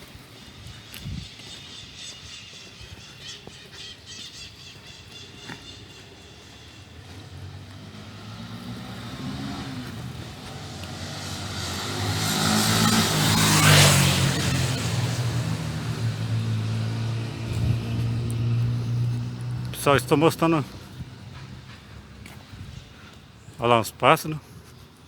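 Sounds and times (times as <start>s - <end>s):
vehicle engine passing: 5.4s - 22.5s.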